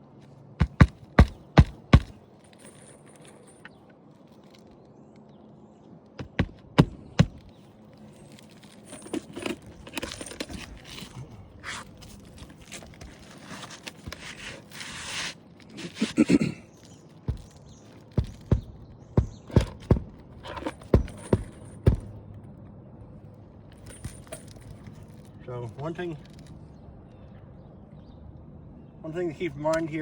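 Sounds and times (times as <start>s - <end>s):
shingles rustling and scraping: 0.1s - 5.4s, 6.2s - 22.2s
hammer striking nails: 0.6s - 2.2s, 6.2s - 7.5s, 17.3s - 22.1s.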